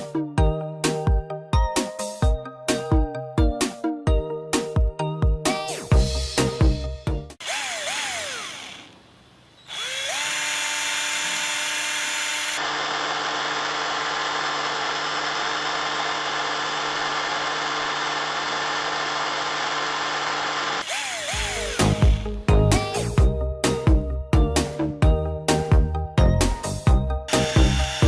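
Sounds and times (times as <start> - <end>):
electric drill motor whining: 7.4 - 22.5, 27.3 - 28.0.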